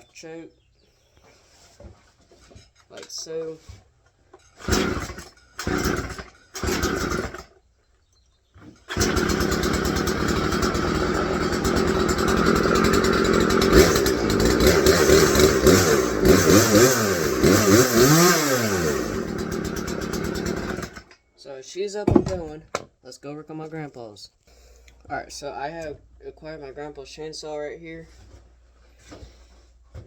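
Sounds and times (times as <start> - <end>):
chainsaw pull cord bursts: 4.4 - 7.6, 8.8 - 21.2
chainsaw engine running and revving: 4.6 - 7.4, 8.9 - 21.0.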